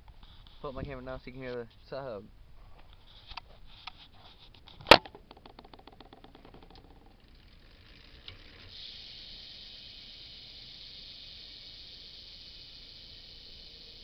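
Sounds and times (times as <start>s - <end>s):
steady hiss: 0.0s - 4.8s, 7.1s - 14.0s
bike freewheel clicking: 5.1s - 14.0s.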